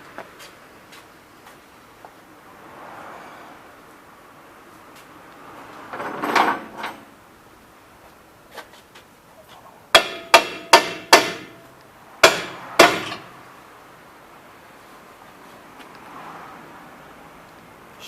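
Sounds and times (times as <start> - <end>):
hammer striking steel: 10.0 - 11.6, 12.2 - 13.3.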